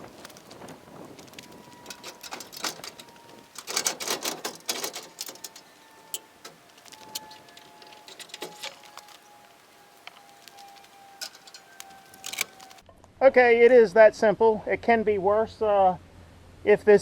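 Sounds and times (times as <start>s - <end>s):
metal rattling: 0.0s - 12.8s
metallic clicks and clanks: 0.1s - 12.8s.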